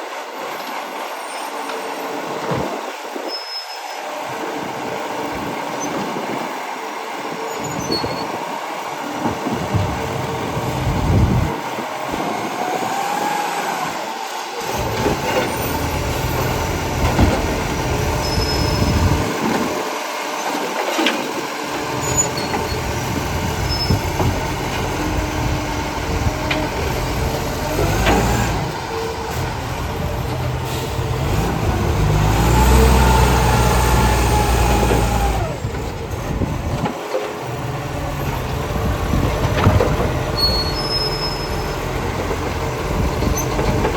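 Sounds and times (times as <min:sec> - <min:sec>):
hydraulics whining: 0:07.0 - 0:43.9
diesel engine revving: 0:09.3 - 0:20.3, 0:21.3 - 0:43.9.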